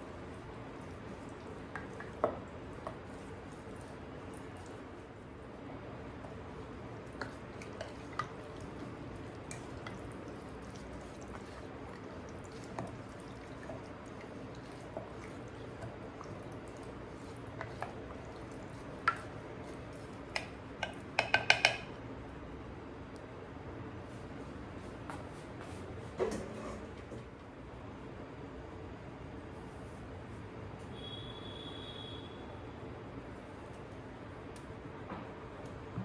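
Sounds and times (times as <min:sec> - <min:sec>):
low background hum: 0:00.0 - 0:36.0
kitchenware taps and clicks: 0:20.8 - 0:21.9.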